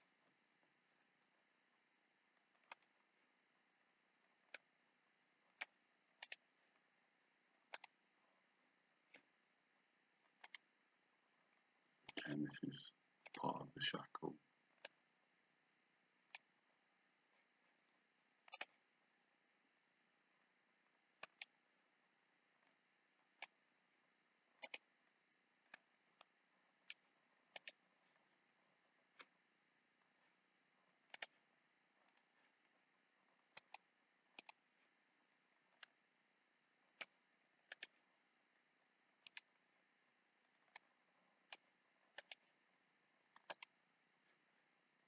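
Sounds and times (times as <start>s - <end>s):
computer mouse clicking: 2.2s - 3.6s, 4.2s - 6.9s, 7.5s - 8.1s, 9.0s - 9.4s, 10.2s - 10.8s, 11.4s - 12.4s, 14.7s - 15.1s, 16.2s - 16.6s, 18.4s - 18.9s, 20.8s - 21.7s, 22.6s - 23.8s, 24.4s - 36.2s, 36.8s - 38.2s, 39.1s - 44.4s
mouse buttons clicking: 5.5s - 6.5s, 7.7s - 8.0s, 10.4s - 10.7s, 18.4s - 18.8s, 21.2s - 21.6s, 24.5s - 24.9s, 26.8s - 28.2s, 31.0s - 31.4s, 33.5s - 34.6s, 36.9s - 38.0s, 39.2s - 39.6s, 40.6s - 42.5s, 43.3s - 43.8s.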